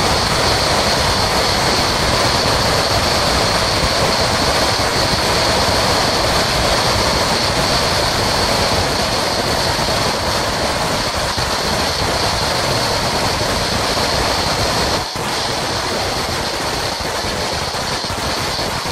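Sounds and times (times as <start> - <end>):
firecracker string crackling: 0.0 - 18.9.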